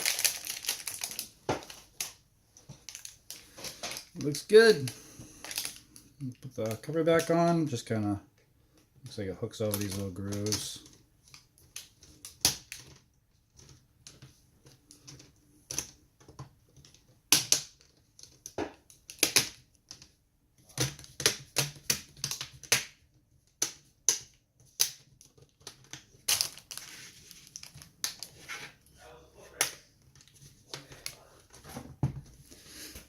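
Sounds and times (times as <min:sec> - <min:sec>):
plastic rubbing and handling: 0:00.0 - 0:07.5, 0:24.5 - 0:28.9.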